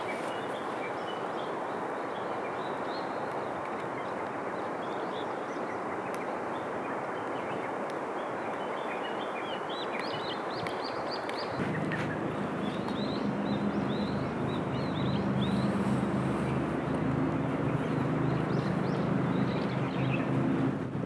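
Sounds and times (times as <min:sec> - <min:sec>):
small birds chirping: 0:10.0 - 0:20.8
river rushing: 0:11.5 - 0:21.0.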